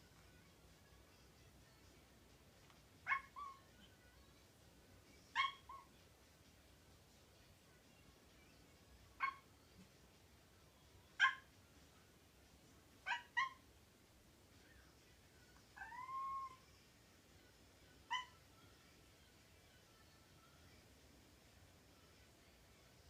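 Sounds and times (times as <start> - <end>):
cat yipping: 3.0 - 3.9, 5.3 - 5.9, 9.2 - 9.5, 11.2 - 11.5, 13.0 - 13.7, 15.8 - 16.7, 18.1 - 18.5
cat meowing: 15.8 - 16.7.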